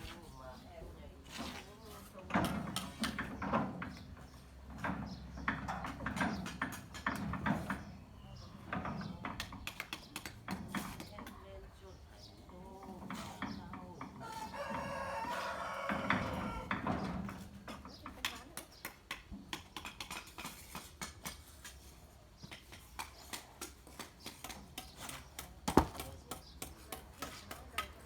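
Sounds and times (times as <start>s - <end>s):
rooster crowing: 14.2s - 16.8s.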